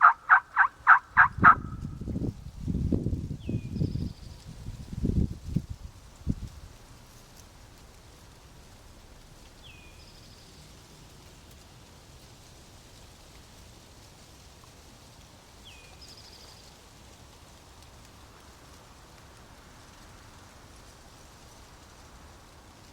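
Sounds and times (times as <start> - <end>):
songbird singing: 0.0 - 4.9, 9.1 - 10.8, 15.6 - 16.8.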